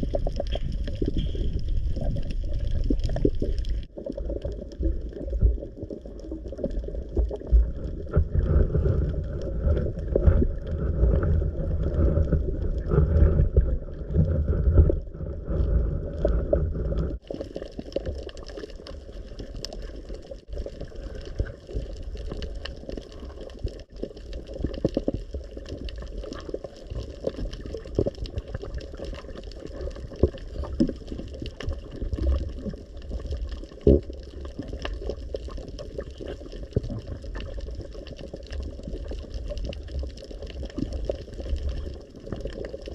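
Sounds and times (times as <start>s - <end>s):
water sloshing and gurgling: 0.0s - 42.9s.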